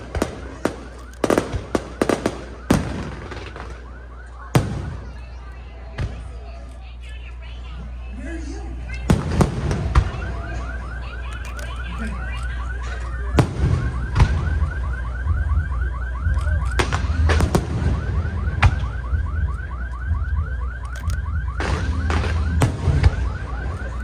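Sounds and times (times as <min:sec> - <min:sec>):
fireworks bangs: 0:00.0 - 0:06.6, 0:08.8 - 0:11.3, 0:12.5 - 0:19.9, 0:21.4 - 0:24.0
fireworks rumble: 0:00.0 - 0:24.0.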